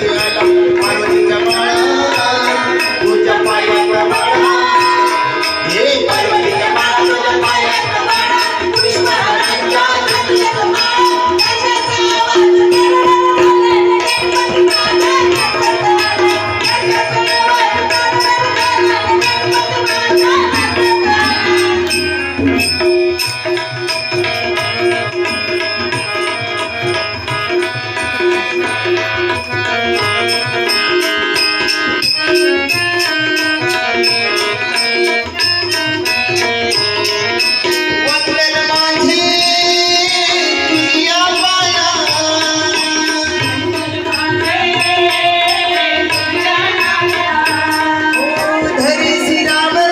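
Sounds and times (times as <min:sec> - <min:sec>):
hand drum rhythm: 0:00.0 - 0:49.9
melody line: 0:19.4 - 0:24.0.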